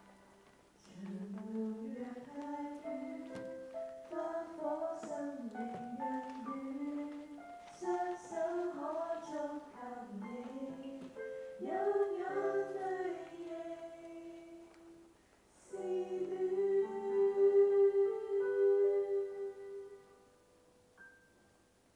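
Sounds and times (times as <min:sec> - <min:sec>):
person singing slow song: 0:00.0 - 0:20.3.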